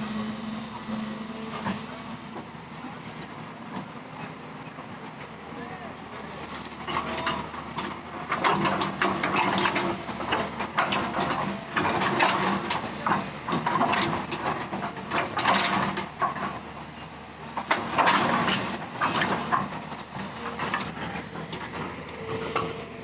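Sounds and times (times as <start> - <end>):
heavy machinery humming: 0.0 - 23.0
clattering and clanking: 6.6 - 22.8.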